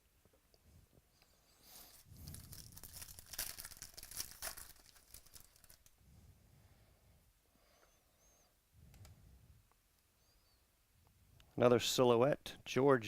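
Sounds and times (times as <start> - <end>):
trading cards rustling and scraping: 1.7 - 5.9
paper or plastic crinkling: 1.8 - 5.9.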